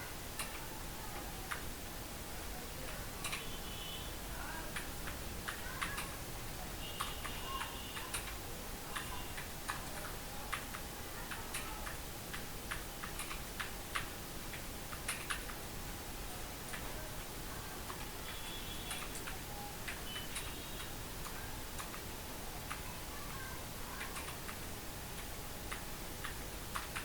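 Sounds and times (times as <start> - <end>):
faint steady hum: 0.0 - 27.0
computer keyboard typing: 3.2 - 3.4, 4.7 - 6.2, 6.9 - 15.6, 17.9 - 22.0, 23.9 - 24.6, 25.2 - 27.0.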